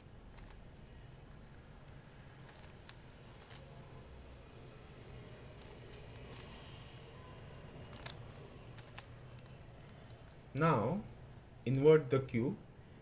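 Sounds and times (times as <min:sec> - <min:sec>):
low steady hum: 0:00.0 - 0:13.0
puzzle cube clicking: 0:00.2 - 0:00.6, 0:05.5 - 0:10.5.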